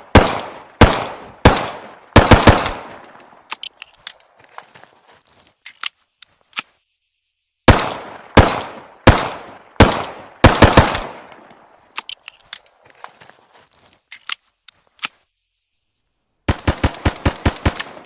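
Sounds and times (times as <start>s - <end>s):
pistol shots with echo: 0.1s - 3.0s, 7.7s - 11.2s.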